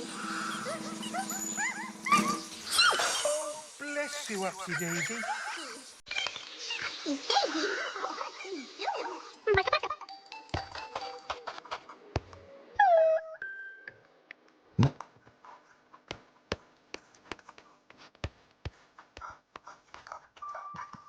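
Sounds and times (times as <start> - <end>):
soft background music: 9.3 - 14.3.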